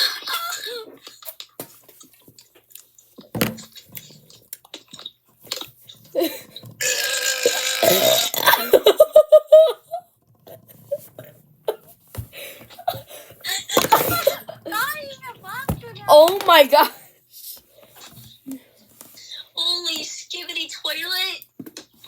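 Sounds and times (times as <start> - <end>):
girl's long loud belch: 6.8 - 8.8.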